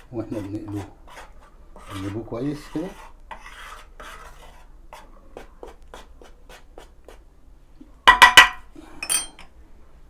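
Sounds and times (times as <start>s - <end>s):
soft scraping strokes: 0.0s - 7.2s.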